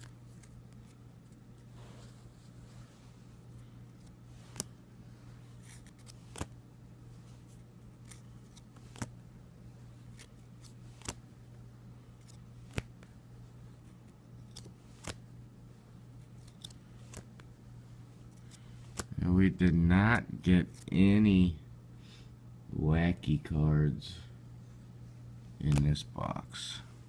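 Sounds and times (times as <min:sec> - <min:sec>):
steady low hum: 0:00.0 - 0:27.0
trading cards clicking: 0:04.0 - 0:04.7, 0:05.6 - 0:06.6, 0:08.0 - 0:09.2, 0:10.1 - 0:11.2, 0:12.2 - 0:13.1, 0:14.4 - 0:15.2, 0:16.4 - 0:17.5, 0:18.3 - 0:19.2, 0:20.1 - 0:21.0, 0:25.6 - 0:26.1.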